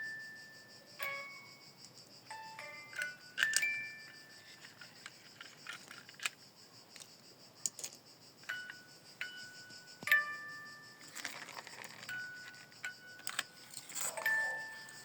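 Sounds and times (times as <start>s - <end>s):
plastic toy vehicles clicking: 2.9s - 3.8s, 4.4s - 8.0s, 11.0s - 15.0s.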